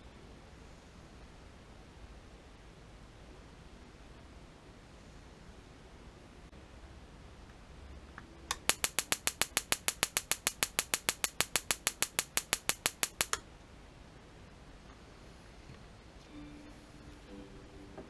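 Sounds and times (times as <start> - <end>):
electric sparks snapping: 8.5 - 13.4.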